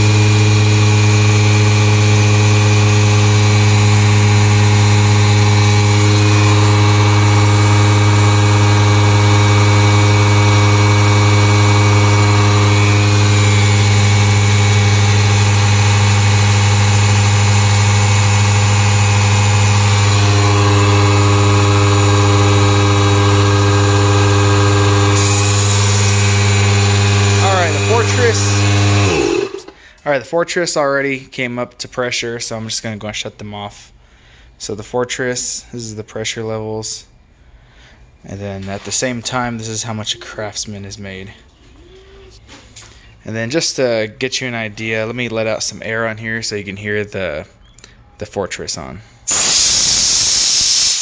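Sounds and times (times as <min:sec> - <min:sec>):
air compressors running: 0:00.0 - 0:30.0, 0:49.0 - 0:51.0.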